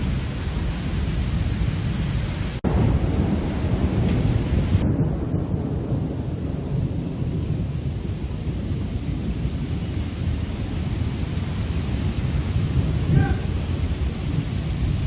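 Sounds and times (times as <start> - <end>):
gusty wind rumbling: 0.0 - 15.0
heavy rain hiss: 6.0 - 15.0.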